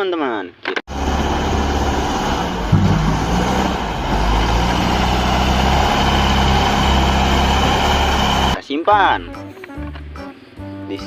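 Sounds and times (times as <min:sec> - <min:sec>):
heavy engine idling: 0:00.9 - 0:08.6.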